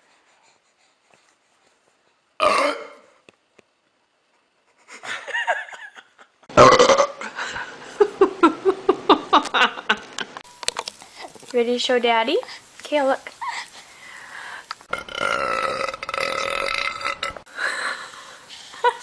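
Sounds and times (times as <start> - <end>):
person burping loudly: 2.4 - 3.1, 6.5 - 7.3, 14.9 - 17.5.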